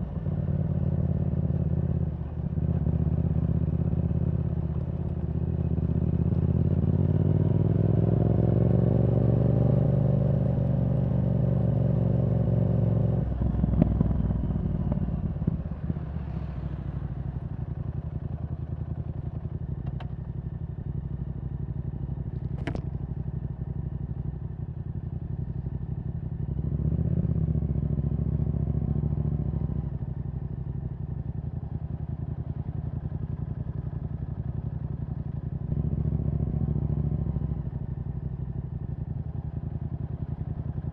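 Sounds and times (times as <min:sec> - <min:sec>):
motorcycle engine revving: 0:05.8 - 0:18.1, 0:35.4 - 0:40.8
exhaust pops: 0:22.4 - 0:23.1.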